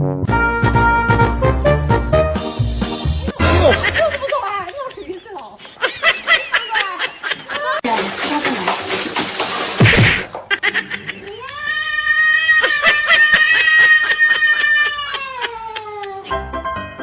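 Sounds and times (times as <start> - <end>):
music: 0.0 - 4.0, 16.3 - 17.0
cat yowling: 11.5 - 16.3.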